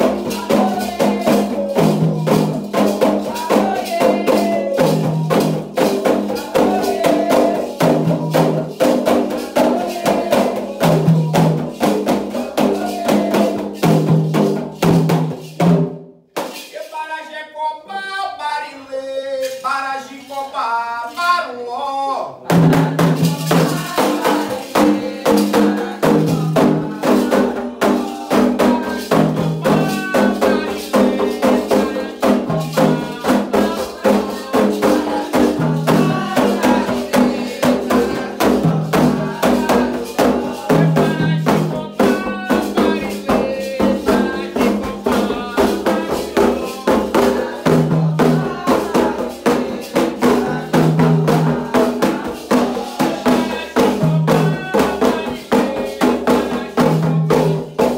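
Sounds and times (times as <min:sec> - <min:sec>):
chanted singing: 0:00.0 - 0:14.1, 0:22.7 - 0:57.9
hand drums beating: 0:00.0 - 0:16.7, 0:22.5 - 0:57.9.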